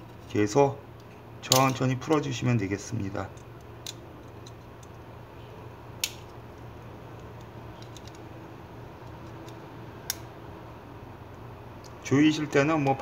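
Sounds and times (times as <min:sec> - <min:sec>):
steady low hum: 0:00.0 - 0:13.0
small metal clicks: 0:07.1 - 0:08.2.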